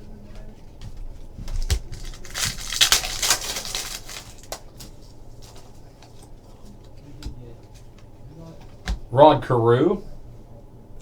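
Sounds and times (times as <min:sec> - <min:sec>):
cards clicking and rustling: 0:00.4 - 0:09.0
wrapper tearing and crinkling: 0:01.5 - 0:05.7.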